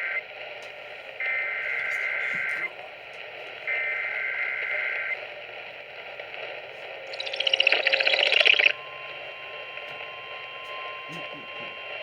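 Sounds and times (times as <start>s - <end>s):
buzzy digital data burst: 7.1s - 8.8s.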